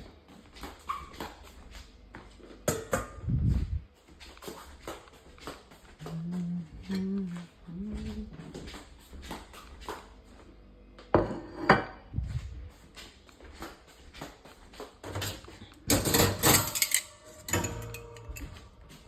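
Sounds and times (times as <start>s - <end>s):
dishes and utensils clattering: 15.0s - 19.0s.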